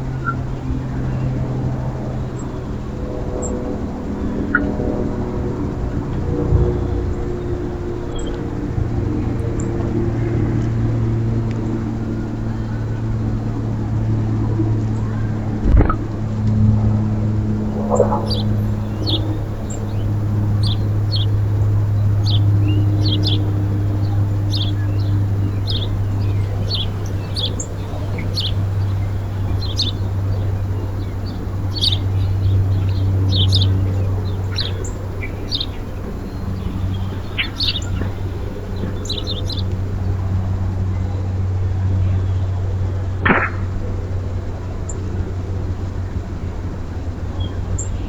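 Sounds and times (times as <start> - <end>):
steady low hum: 0.0 - 48.0
small birds chirping: 17.3 - 41.2.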